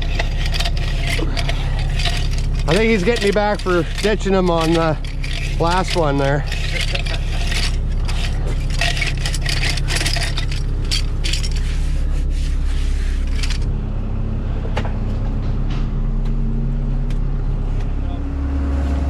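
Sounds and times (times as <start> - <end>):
scraping and clinking: 0.0 - 13.7
engine running: 0.0 - 19.0.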